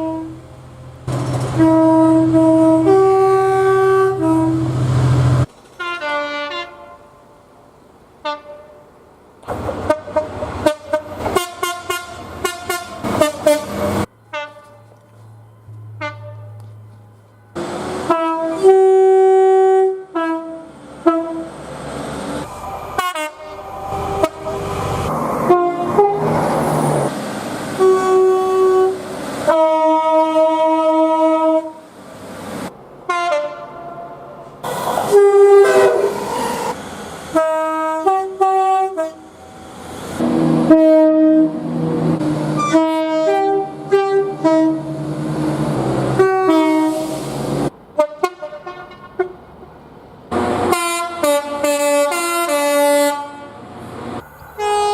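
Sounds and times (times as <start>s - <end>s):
train horn blasts: 0.0s - 0.4s, 1.5s - 5.2s, 5.8s - 7.2s, 8.2s - 8.9s, 9.8s - 15.0s, 15.8s - 17.0s, 17.9s - 21.5s, 22.5s - 26.5s, 27.8s - 31.8s, 33.1s - 34.3s, 35.1s - 36.2s, 37.3s - 39.3s, 40.2s - 41.7s, 42.6s - 45.0s, 46.1s - 47.2s, 48.0s - 49.4s, 50.4s - 53.6s, 54.6s - 54.9s
train running rumble: 0.4s - 6.2s, 9.4s - 19.4s.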